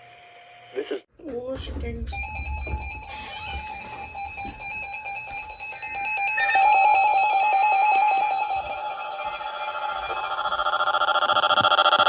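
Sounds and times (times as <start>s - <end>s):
steady beep tone: 2.1s - 11.4s
fast pulsing beeps: 2.2s - 12.0s.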